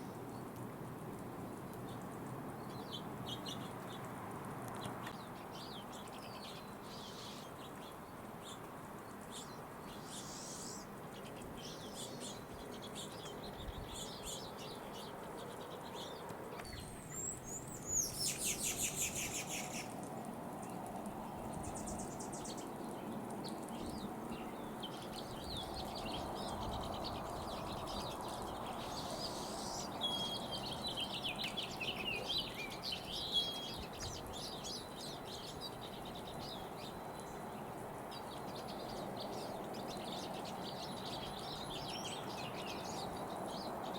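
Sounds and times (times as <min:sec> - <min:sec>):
low background hiss: 0:00.0 - 0:43.9
songbirds calling and singing: 0:00.0 - 0:43.9.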